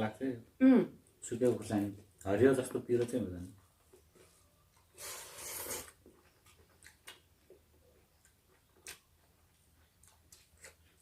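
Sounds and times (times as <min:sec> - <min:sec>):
chewing clicks: 0:05.8 - 0:11.0.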